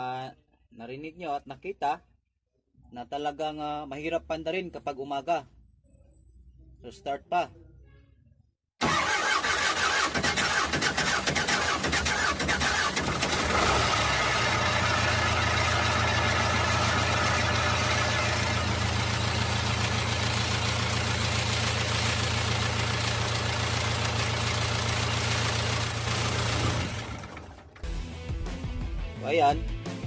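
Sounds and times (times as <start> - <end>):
engine cranking: 8.8 - 19.2, 25.8 - 27.8
diesel engine idling: 8.8 - 27.8.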